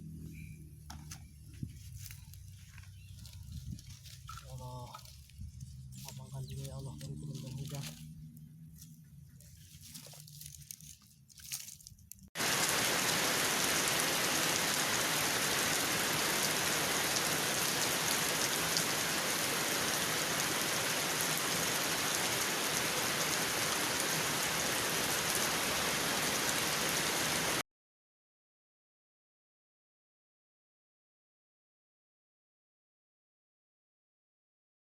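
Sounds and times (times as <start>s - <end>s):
steady rain falling: 9.6s - 27.6s.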